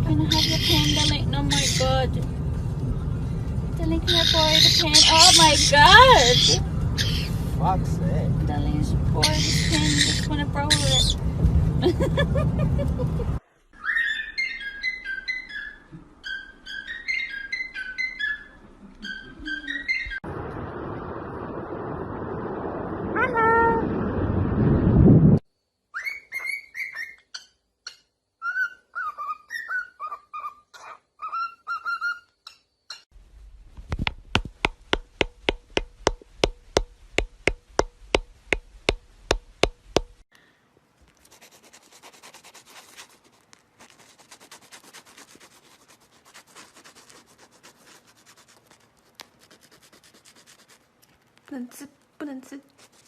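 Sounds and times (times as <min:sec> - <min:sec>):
parrot whistled chirps: 0:13.8 - 0:20.2, 0:25.9 - 0:27.6, 0:28.4 - 0:32.3
sharp taps: 0:33.8 - 0:40.2
faint scratching: 0:41.1 - 0:53.0.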